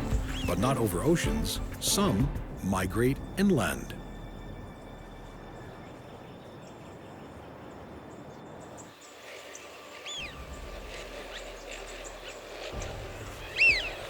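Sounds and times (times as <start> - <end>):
background hiss: 0.0 - 14.0
small bird chirping: 5.5 - 14.0.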